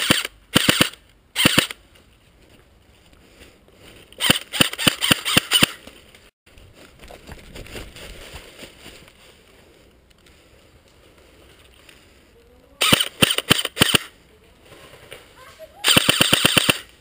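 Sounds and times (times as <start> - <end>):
airsoft rifle shots: 0.0 - 1.8, 4.2 - 5.8, 12.8 - 14.1, 15.8 - 17.0.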